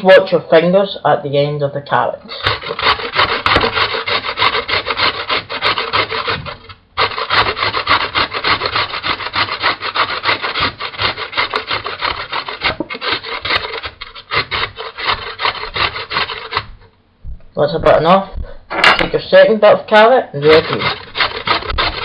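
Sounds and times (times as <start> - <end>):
carrot grated on metal grater: 2.3 - 16.8, 20.0 - 22.0.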